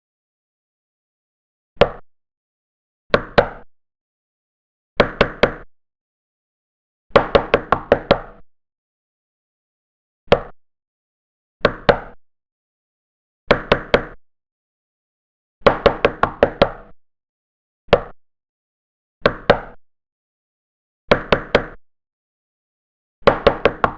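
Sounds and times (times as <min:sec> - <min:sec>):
knocking on a door: 0:23.2 - 0:23.9.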